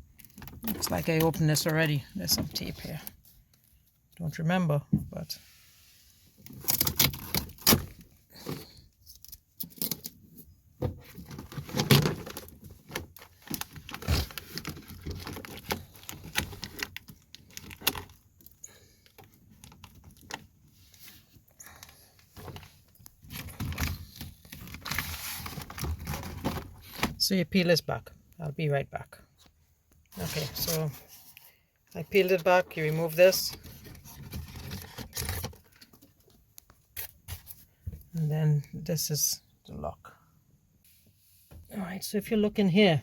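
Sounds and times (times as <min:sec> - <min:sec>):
tape tearing: 0:06.5 - 0:08.0.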